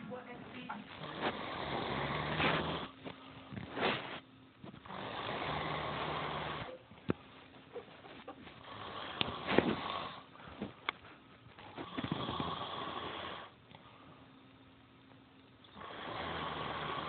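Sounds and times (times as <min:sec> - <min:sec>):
person snoring: 0:00.9 - 0:03.0, 0:04.8 - 0:06.7, 0:08.6 - 0:10.3, 0:11.8 - 0:13.5, 0:15.8 - 0:17.0.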